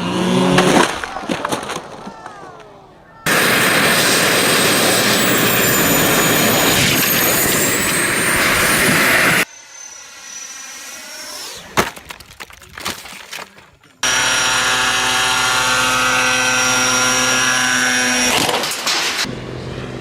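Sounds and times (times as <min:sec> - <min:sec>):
jet turbine engine whining: 0:03.3 - 0:11.8.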